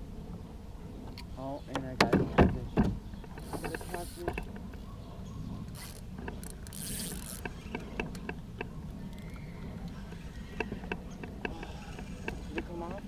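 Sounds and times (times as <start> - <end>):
fishing reel ticking: 5.8 - 7.8.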